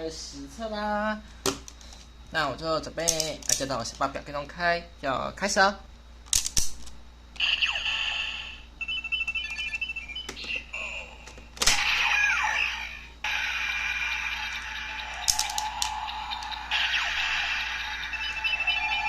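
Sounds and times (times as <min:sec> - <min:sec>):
toy electronic beeps: 0:07.4 - 0:10.9, 0:14.0 - 0:19.0
toy transformation music: 0:11.9 - 0:19.0.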